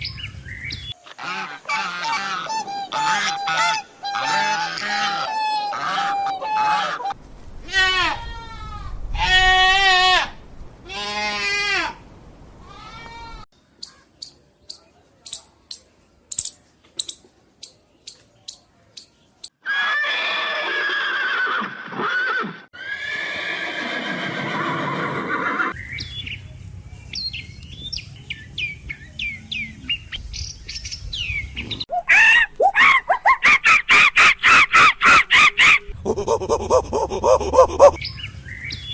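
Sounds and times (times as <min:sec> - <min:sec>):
animal bleat: 0:07.6 - 0:12.0, 0:12.6 - 0:13.4
bird chirps: 0:13.6 - 0:19.5
long pitched animal calls: 0:31.9 - 0:35.9.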